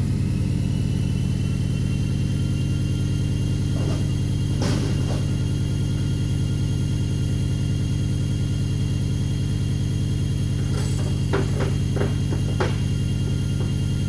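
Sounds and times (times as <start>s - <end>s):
welder hiss: 10.4s - 13.8s.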